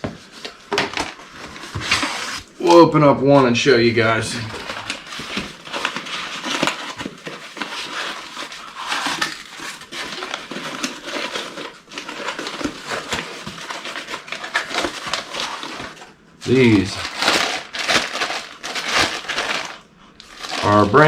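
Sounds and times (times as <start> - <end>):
packaging crinkling: 4.0 - 21.0.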